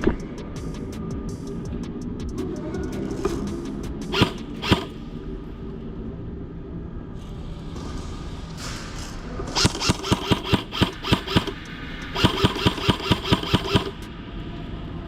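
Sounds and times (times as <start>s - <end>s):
airsoft gun rapid shots: 4.1s - 5.0s, 9.5s - 14.2s.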